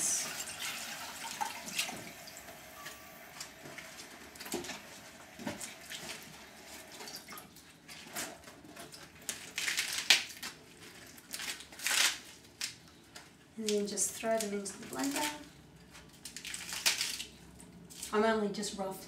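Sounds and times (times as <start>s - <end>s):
tap water running and splashing: 0.0s - 2.6s.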